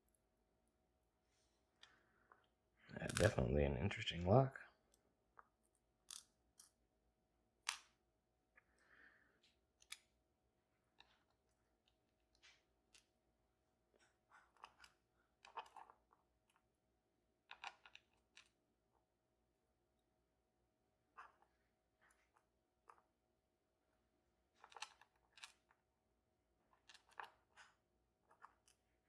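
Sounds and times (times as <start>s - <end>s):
small clicks and taps of lock parts: 9.4s - 10.1s.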